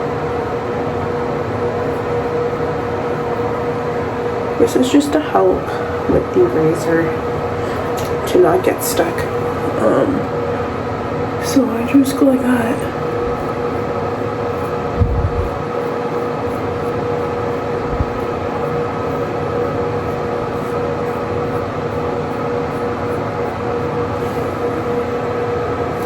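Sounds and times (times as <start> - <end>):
electric razor motor hum: 12.7 - 26.0.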